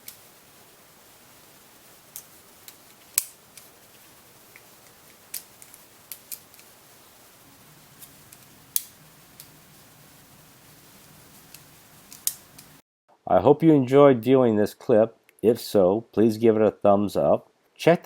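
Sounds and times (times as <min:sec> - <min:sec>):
multi-tool metallic clicks and snaps: 0:11.5 - 0:12.7.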